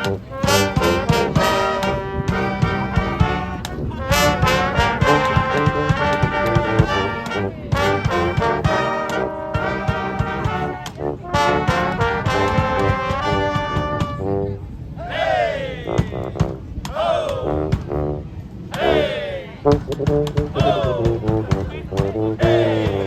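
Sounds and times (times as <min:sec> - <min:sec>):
steady percussion beat: 0:00.0 - 0:11.0, 0:19.7 - 0:23.0
brass band playing upbeat tune: 0:00.0 - 0:23.0.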